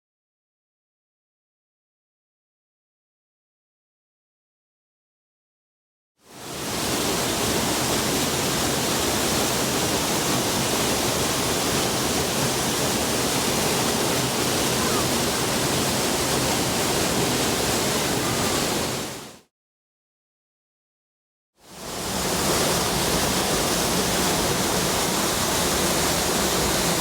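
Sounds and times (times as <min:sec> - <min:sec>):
waterfall rushing: 0:06.4 - 0:19.4, 0:21.7 - 0:27.0.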